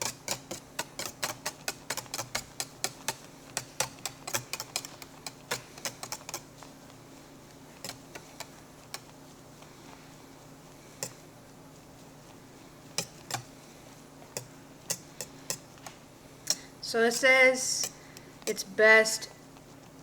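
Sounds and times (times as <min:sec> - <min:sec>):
whisk clicking against bowl: 0:00.0 - 0:06.6, 0:07.8 - 0:09.2, 0:11.0 - 0:11.2, 0:12.9 - 0:13.5, 0:14.2 - 0:18.7.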